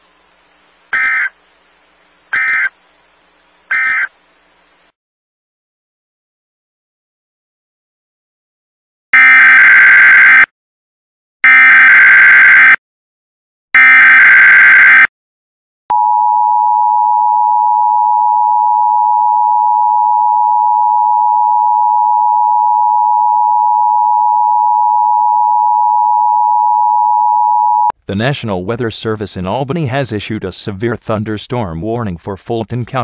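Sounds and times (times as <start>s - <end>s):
buzzy digital data bursts: 2.4s - 2.7s.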